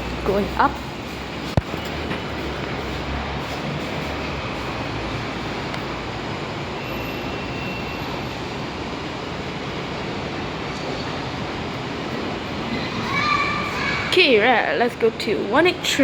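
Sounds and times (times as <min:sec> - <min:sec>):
lift rushing hum: 0:08.1 - 0:15.5.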